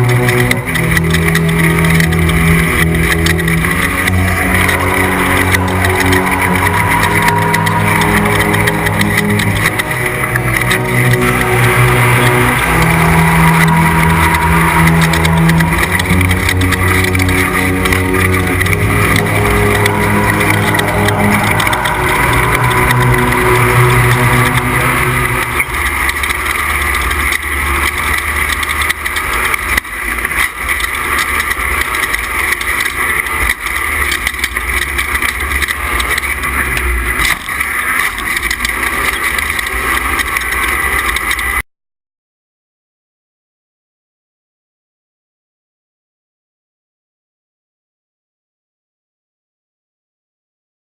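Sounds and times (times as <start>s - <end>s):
road noise: 0.0s - 41.6s
truck engine revving: 0.0s - 41.6s.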